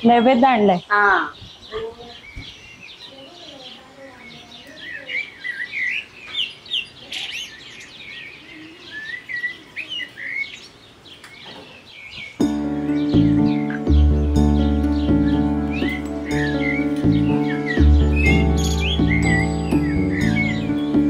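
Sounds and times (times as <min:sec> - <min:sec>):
small birds chirping: 0:00.0 - 0:21.0.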